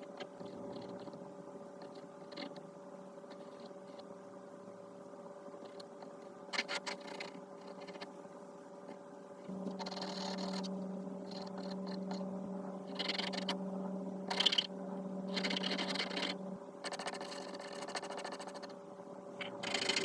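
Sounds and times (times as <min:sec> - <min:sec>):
low hum: 0:07.6 - 0:20.0
pencil scratching on paper: 0:09.7 - 0:10.7, 0:15.3 - 0:18.7.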